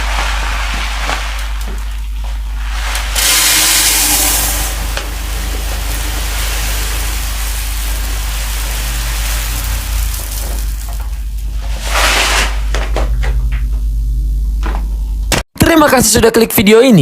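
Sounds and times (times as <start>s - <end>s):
low hum: 0.0s - 15.4s
steady hissing rush: 2.5s - 12.7s.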